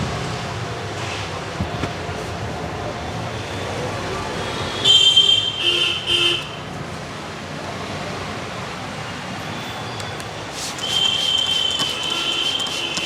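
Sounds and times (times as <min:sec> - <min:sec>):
street traffic: 0:00.0 - 0:13.0
vehicle horn honking: 0:10.8 - 0:13.0.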